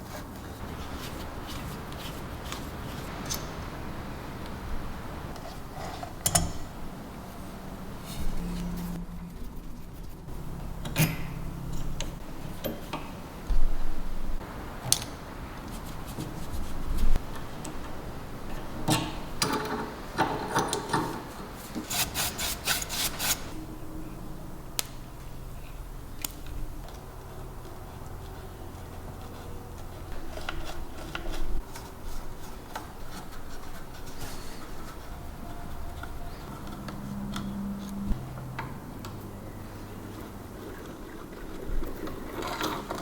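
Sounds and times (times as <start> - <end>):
hand tool rubbing and scraping: 7.1 - 11.4, 21.0 - 25.8, 28.2 - 35.8.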